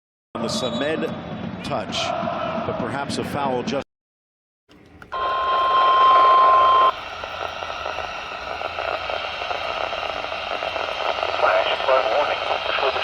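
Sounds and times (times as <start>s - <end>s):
high-pitched warning beep: 5.1s - 12.8s
radio static hiss: 5.1s - 13.0s.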